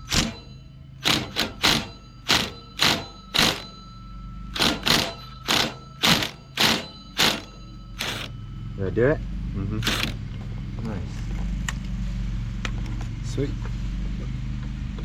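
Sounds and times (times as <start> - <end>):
impact wrench rattling blows: 0.0 - 3.8, 4.6 - 8.3, 9.8 - 10.4
steady low hum: 0.0 - 14.9.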